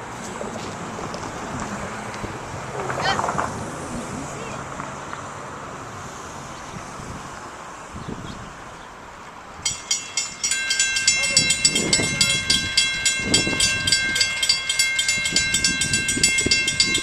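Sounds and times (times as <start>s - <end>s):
railroad crossing bell ringing: 9.6s - 17.0s.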